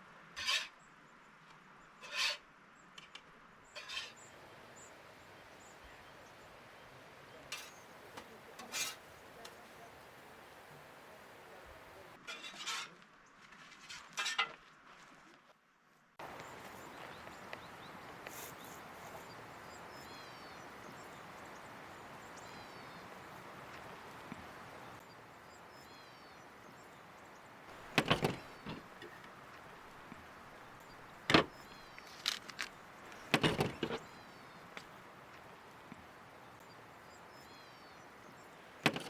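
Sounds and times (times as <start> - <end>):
sharp knocks and clatters: 27.7 - 29.2, 33.3 - 34.0.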